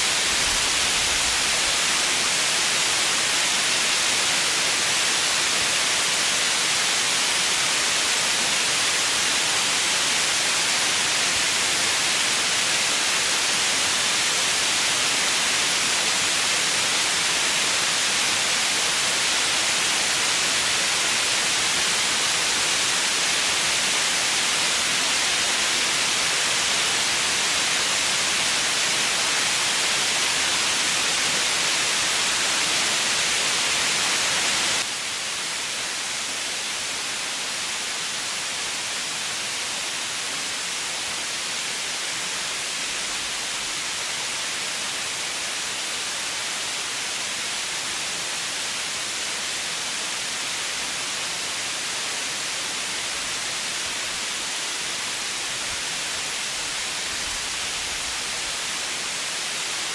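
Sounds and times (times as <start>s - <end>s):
steady white noise hiss: 0.0s - 59.9s.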